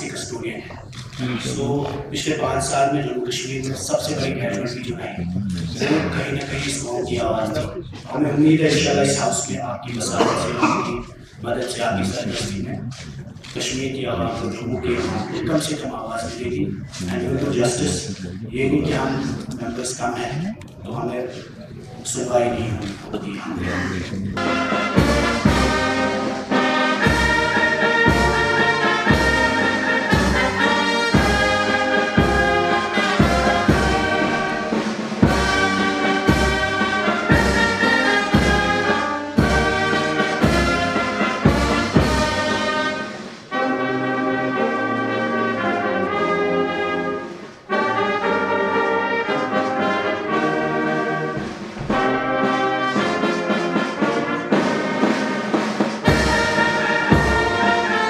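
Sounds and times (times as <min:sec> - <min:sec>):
brass band playing: 0:23.5 - 0:58.0
drum beat: 0:23.8 - 0:43.4, 0:51.4 - 0:58.0.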